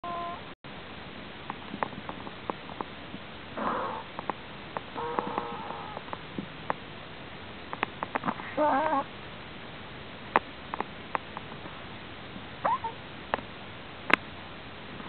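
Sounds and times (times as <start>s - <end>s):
prairie dog snoring: 3.6s - 4.1s, 5.0s - 6.0s.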